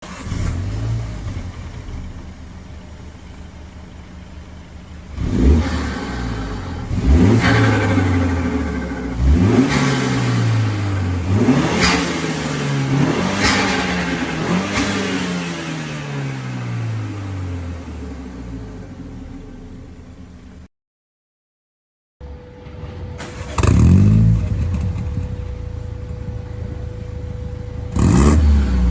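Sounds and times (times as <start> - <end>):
car engine revving: 5.0 - 20.6, 23.2 - 28.9.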